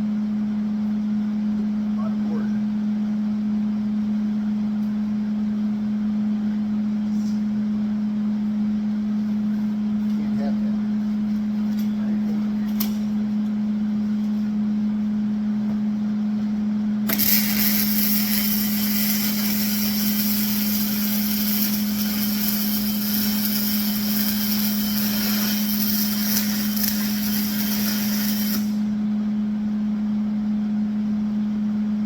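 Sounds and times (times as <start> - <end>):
low machine hum: 0.0 - 32.0
loud even hiss: 17.1 - 28.9.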